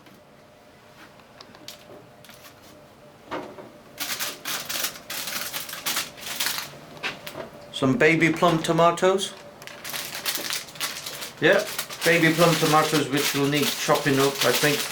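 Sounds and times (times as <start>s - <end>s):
plastic packaging crinkling: 4.0s - 6.8s, 8.4s - 14.9s.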